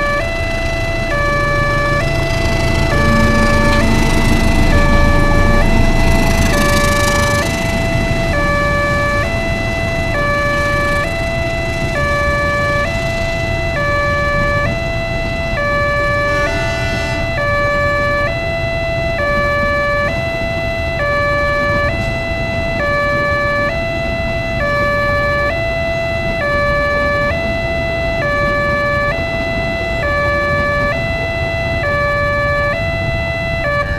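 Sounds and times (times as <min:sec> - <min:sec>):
two-tone level crossing alarm: 0:00.0 - 0:33.9
low rumble: 0:00.4 - 0:16.4.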